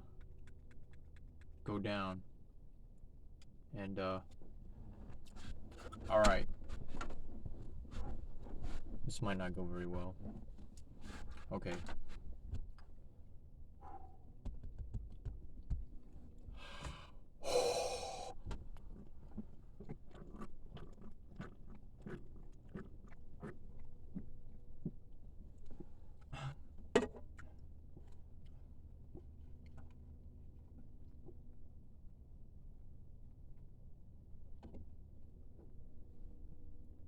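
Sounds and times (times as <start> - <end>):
man gasping: 16.6 - 18.4
gulping swallows: 17.4 - 18.4.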